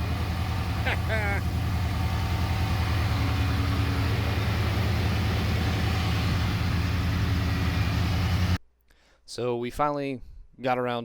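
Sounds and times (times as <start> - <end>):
pickup truck engine idling: 0.0 - 8.6.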